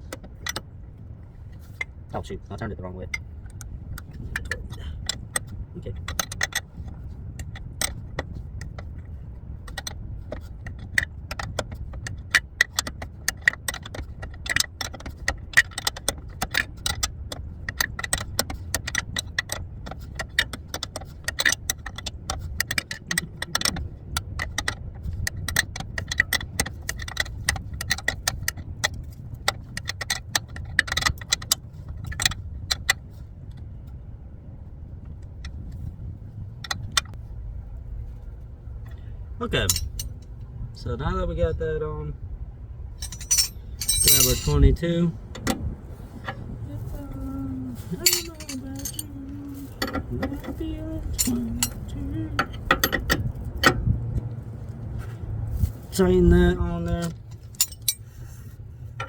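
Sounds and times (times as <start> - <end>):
low background rumble: 0.0 - 59.0
ratchet wrench clicking: 47.8 - 53.7, 57.4 - 58.0.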